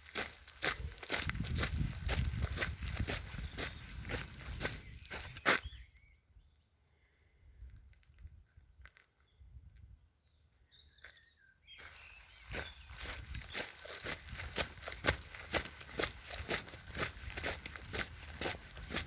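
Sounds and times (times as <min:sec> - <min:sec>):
footsteps crunching through leaves: 0:00.0 - 0:05.7, 0:11.8 - 0:19.0
small birds chirping: 0:00.0 - 0:19.0.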